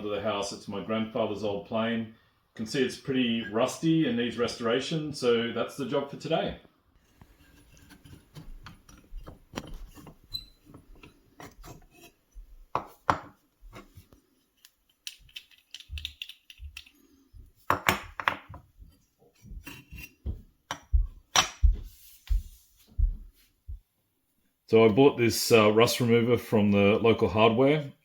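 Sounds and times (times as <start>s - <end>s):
metal parts clinking and scraping: 14.5s - 17.1s.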